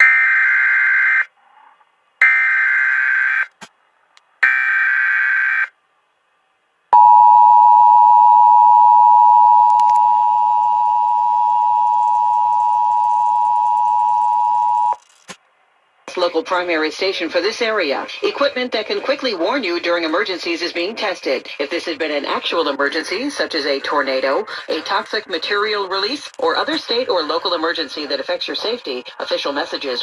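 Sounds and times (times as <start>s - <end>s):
two-tone attention signal: 7.0s - 15.0s.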